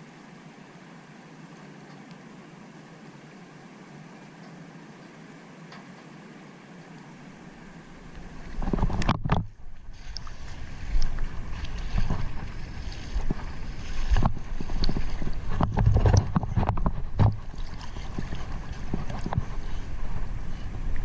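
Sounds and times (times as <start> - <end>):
steady low rumble: 7.2 - 21.0
irregular knocks and bumps: 14.1 - 17.5.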